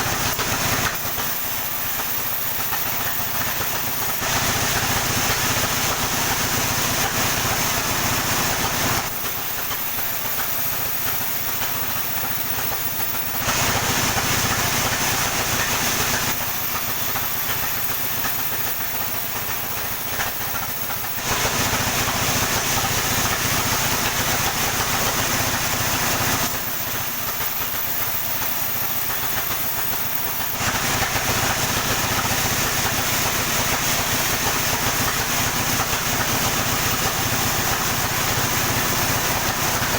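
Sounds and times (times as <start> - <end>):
saw cutting log hiss: 0.0 - 39.9
sawmill engine hum: 0.0 - 39.9.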